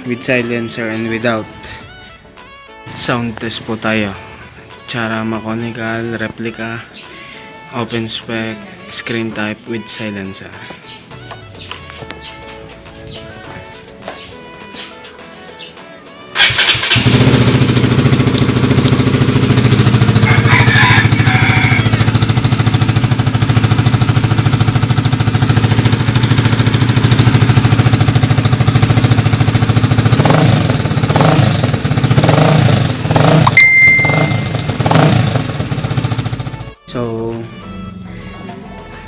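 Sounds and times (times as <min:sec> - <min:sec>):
motorcycle engine idling and revving: 0:16.4 - 0:36.8.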